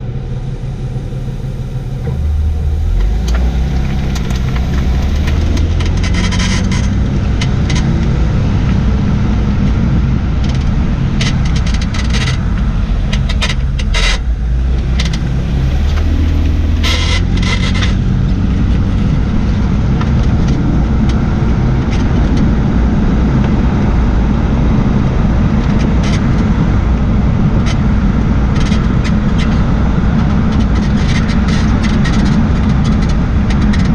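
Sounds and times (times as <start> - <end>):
car road and running noise: 0.0 - 33.9
suspension creaks and squeaks: 0.9 - 22.7.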